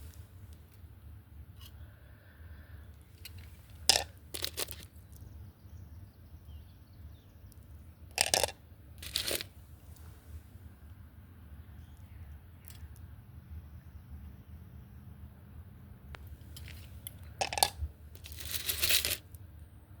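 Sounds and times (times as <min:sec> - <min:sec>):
rocks clattering and scraping: 0:03.2 - 0:04.9, 0:16.5 - 0:19.2.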